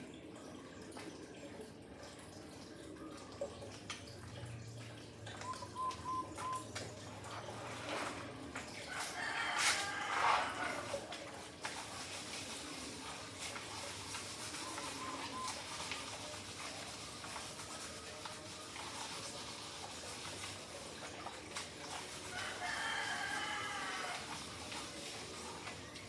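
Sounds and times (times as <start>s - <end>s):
rooster crowing: 8.9s - 10.9s, 22.3s - 24.3s.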